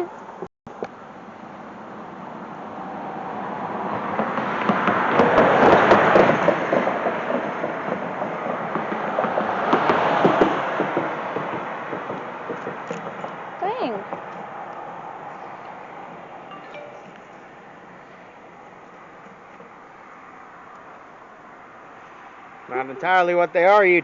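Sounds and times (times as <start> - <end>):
vehicle tyre noise: 0.3 - 16.4.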